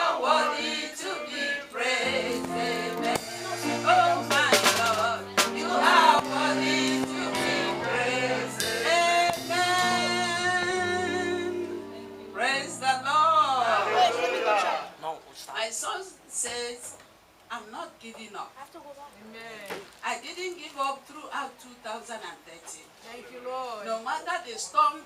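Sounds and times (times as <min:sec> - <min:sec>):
instrumental accompaniment: 0:01.8 - 0:14.7
person singing: 0:02.0 - 0:13.7.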